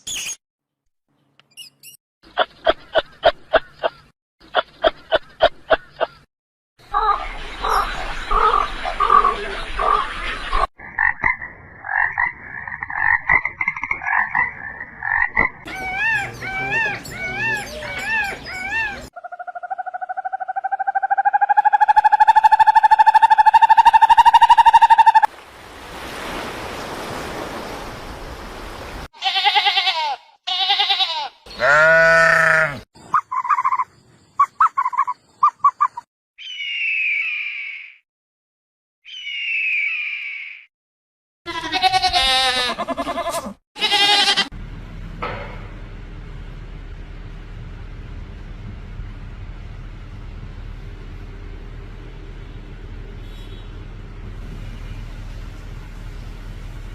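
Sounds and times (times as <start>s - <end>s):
animal calls: 14.0s - 25.3s.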